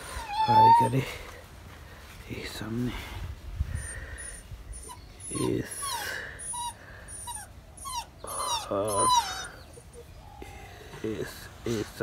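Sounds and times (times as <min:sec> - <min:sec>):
dog whining: 0:00.2 - 0:01.1, 0:03.8 - 0:10.5
small birds chirping: 0:03.7 - 0:12.0.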